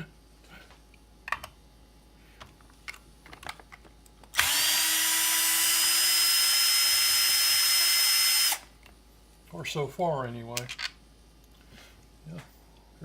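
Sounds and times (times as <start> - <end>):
power drill whining: 4.4 - 8.7.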